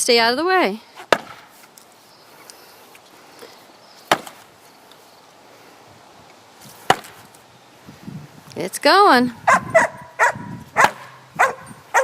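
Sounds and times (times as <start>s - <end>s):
sledgehammer striking wood: 1.1s - 1.5s, 4.1s - 4.4s, 6.8s - 7.2s.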